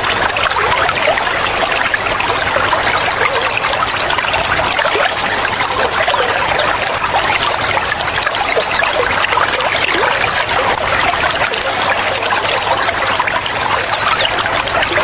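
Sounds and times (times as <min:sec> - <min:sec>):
water trickling and gurgling: 0:00.0 - 0:15.0
birds chirping: 0:05.0 - 0:09.2, 0:11.6 - 0:15.0.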